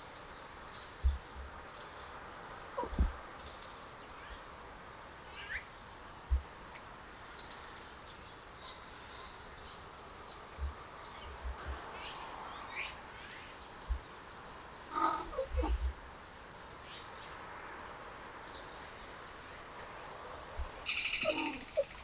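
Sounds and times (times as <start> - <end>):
small birds chirping: 0.0 - 4.6, 5.2 - 17.5, 18.4 - 22.0
soft low thumps: 2.8 - 3.2.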